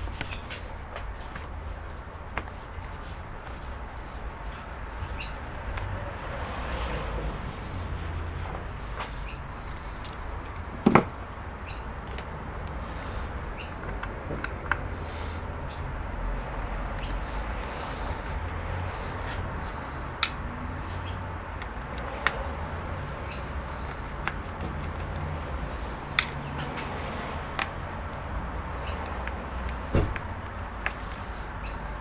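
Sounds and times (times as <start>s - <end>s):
sharp tool clicks: 20.2s - 20.4s.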